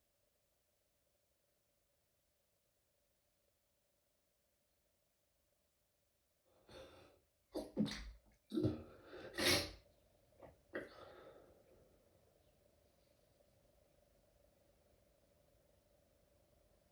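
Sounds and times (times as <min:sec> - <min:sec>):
stifled sneezes: 0:07.6 - 0:09.8.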